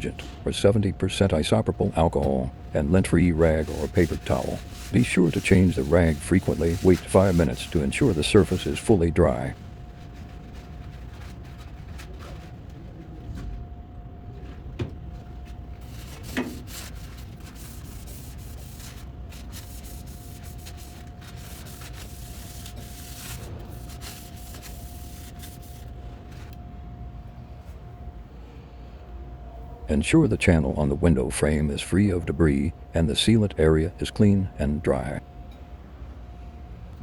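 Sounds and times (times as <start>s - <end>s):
steady background hum: 0.0s - 37.0s
rag rubbing a surface: 2.2s - 12.6s, 15.8s - 26.5s.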